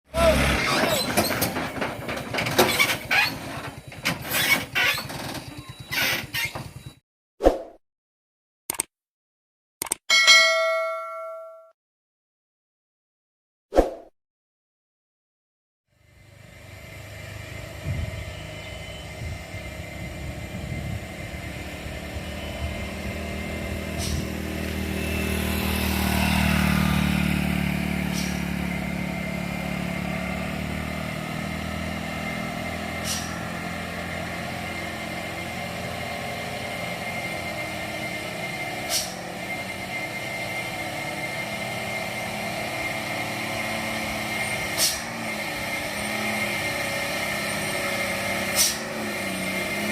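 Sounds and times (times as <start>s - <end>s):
diesel truck engine labouring: 0.1s - 7.0s, 16.0s - 49.9s
sharp clicks: 8.7s - 8.9s, 9.8s - 10.1s.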